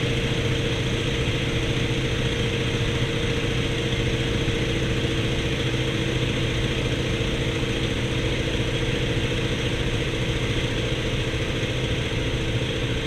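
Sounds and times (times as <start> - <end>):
radial aircraft engine drone: 0.0 - 13.0.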